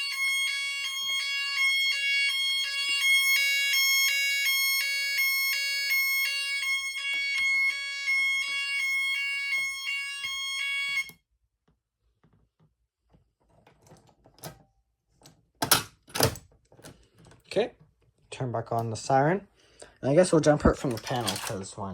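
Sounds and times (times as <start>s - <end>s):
pulsing electronic alarm siren: 0.0s - 11.2s
handling noises: 20.7s - 21.8s.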